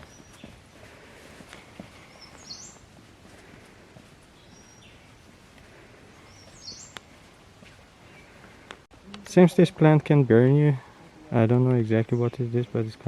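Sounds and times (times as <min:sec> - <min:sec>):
bird chirping: 0:00.0 - 0:00.6, 0:01.9 - 0:03.6, 0:04.3 - 0:08.7
faint outdoor ambience: 0:00.0 - 0:13.0.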